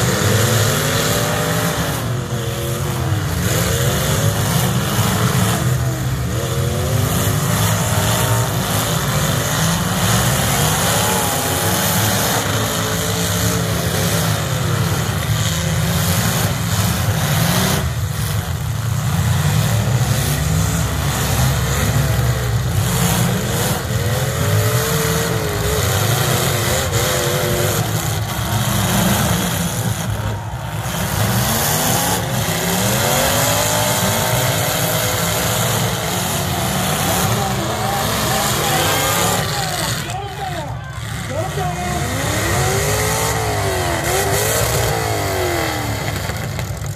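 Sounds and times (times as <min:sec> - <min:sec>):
car engines revving: 0:00.0 - 0:46.9.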